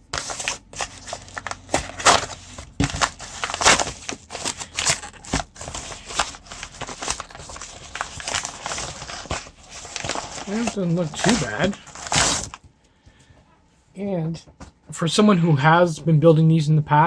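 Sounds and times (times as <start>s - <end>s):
hard plastic crackling: 0.0s - 12.7s.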